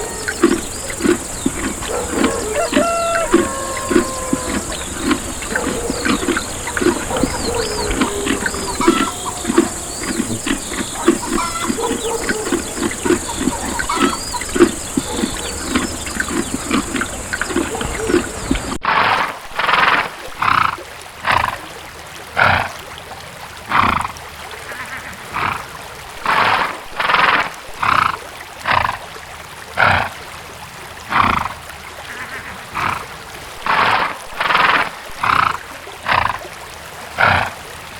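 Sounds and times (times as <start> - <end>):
birds chirping: 0.0 - 18.8
horse snorting breathy blasts: 0.0 - 20.0, 29.8 - 30.2.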